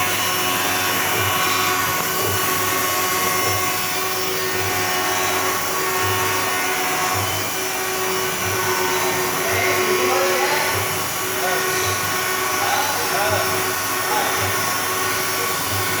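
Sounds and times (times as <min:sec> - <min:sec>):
machining center whine: 0:00.0 - 0:16.0.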